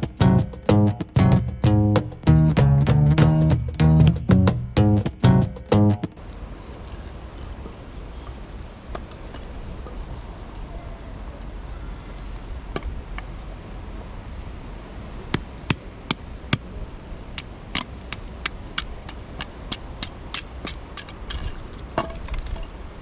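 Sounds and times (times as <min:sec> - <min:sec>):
sharp clicks and knocks: 0:00.0 - 0:06.2
steady low rumble: 0:00.0 - 0:06.2.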